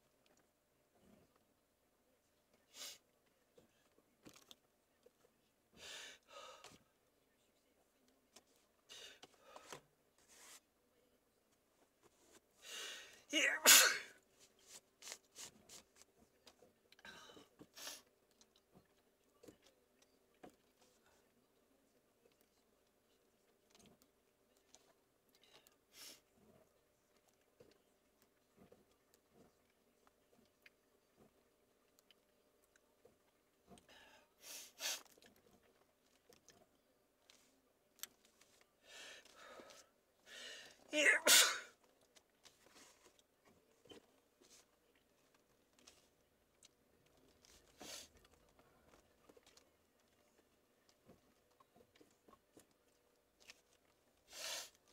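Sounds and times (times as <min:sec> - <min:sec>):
person sneezing: 0:13.4 - 0:14.2, 0:41.0 - 0:41.8.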